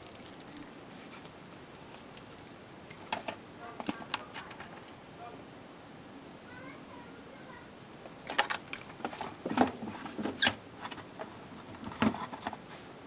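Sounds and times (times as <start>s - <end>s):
objects being handled: 0.0s - 5.0s.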